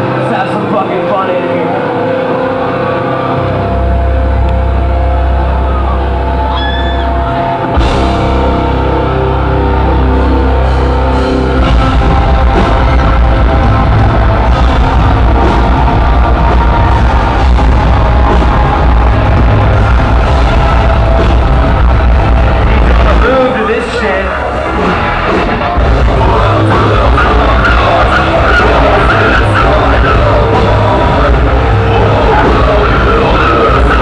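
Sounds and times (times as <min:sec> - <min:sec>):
heavy rock band playing: 0:00.0 - 0:34.0
driving drum beat: 0:10.7 - 0:34.0.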